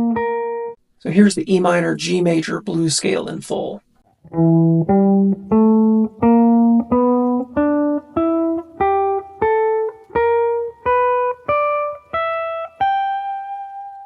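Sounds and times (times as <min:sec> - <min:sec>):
guitar playing ascending scale: 0:00.0 - 0:00.8, 0:04.2 - 0:14.0.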